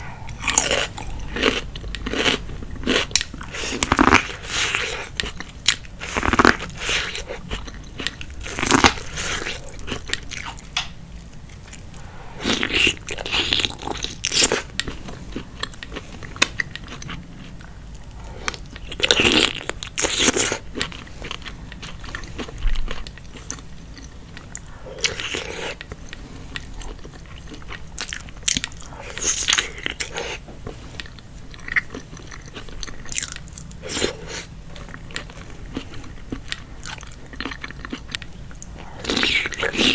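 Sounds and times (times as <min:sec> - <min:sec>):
person biting and chewing: 0:00.0 - 0:11.0, 0:31.0 - 0:39.9.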